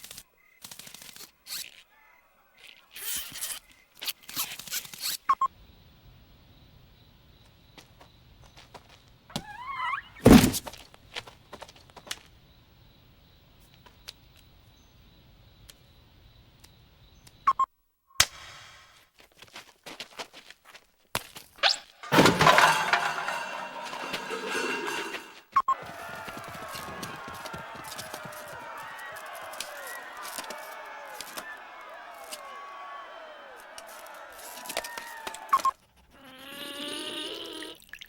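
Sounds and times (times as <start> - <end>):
heavy thud: 10.3 - 10.7
noisy crash: 22.0 - 25.4.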